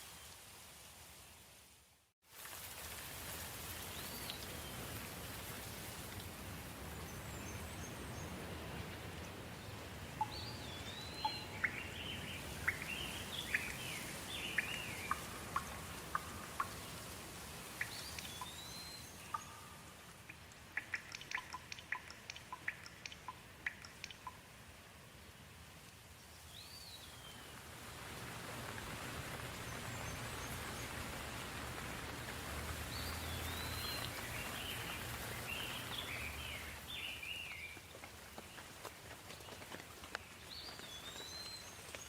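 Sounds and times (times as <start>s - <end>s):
soft rain falling: 0.0s - 42.0s
close water drips ticking: 10.1s - 24.7s, 28.6s - 42.0s.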